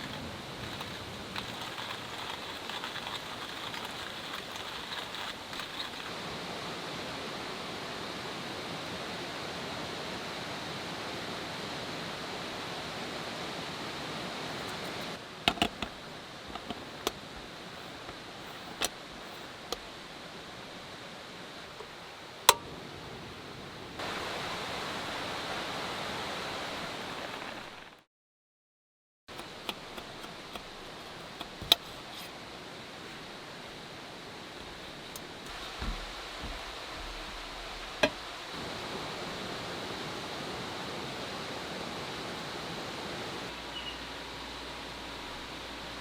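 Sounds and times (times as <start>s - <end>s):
rushing outdoor ambience: 0.0s - 28.0s, 29.3s - 46.0s
sharp clicks and knocks: 15.5s - 17.2s.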